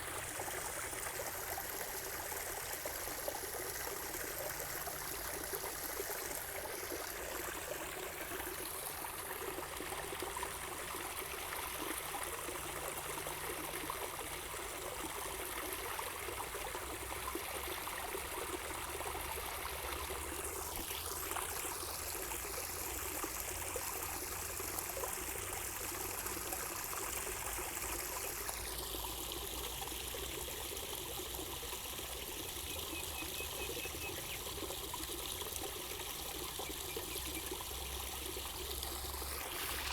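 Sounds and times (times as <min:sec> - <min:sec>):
running water trickling: 0:00.0 - 0:39.9.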